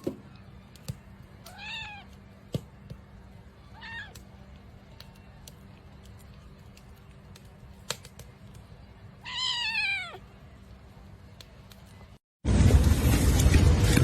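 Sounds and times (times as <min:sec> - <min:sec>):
cat meowing: 0:01.5 - 0:02.1, 0:03.7 - 0:04.2, 0:09.2 - 0:10.2.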